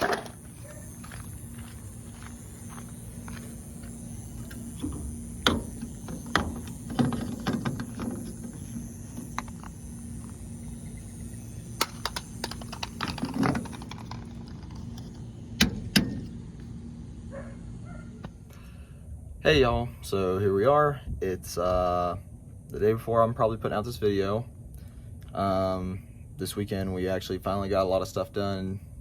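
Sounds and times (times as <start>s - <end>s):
low hum: 0.0s - 20.4s.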